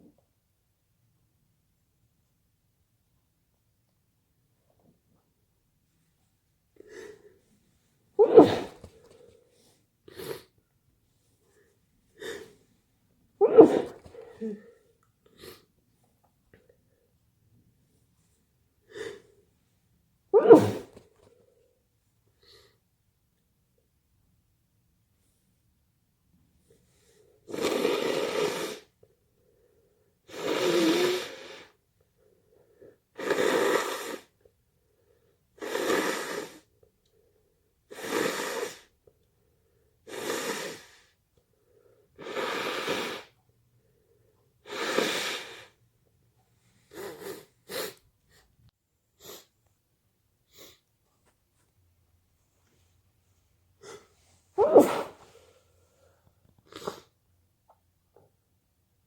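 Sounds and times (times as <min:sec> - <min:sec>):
person sneezing: 0:08.2 - 0:09.2, 0:13.4 - 0:14.8, 0:20.4 - 0:21.0, 0:53.8 - 0:55.6.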